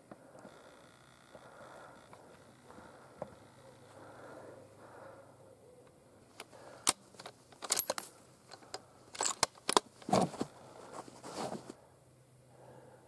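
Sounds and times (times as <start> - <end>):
rifle bolt clicks and rattles: 6.4 - 10.3
rifle bolt scraping: 6.9 - 10.3.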